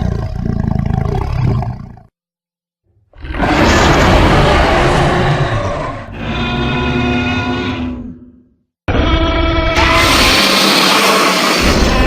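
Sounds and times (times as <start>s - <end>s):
monster roar sound effect: 3.2s - 8.0s, 8.9s - 12.0s.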